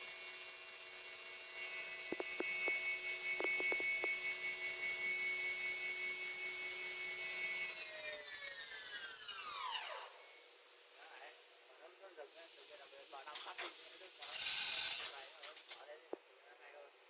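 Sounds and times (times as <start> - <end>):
milling spindle whine winding down: 0.1 - 10.4.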